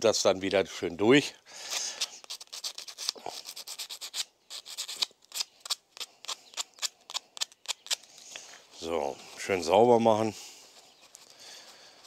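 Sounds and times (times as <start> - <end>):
brake pad rubbing on sandpaper: 1.7 - 5.4.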